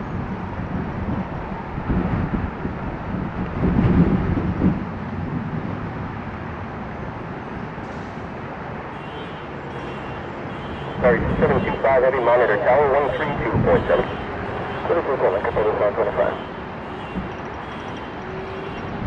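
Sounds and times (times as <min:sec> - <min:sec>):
wind buffeting microphone: 0:00.0 - 0:06.4, 0:11.0 - 0:15.7.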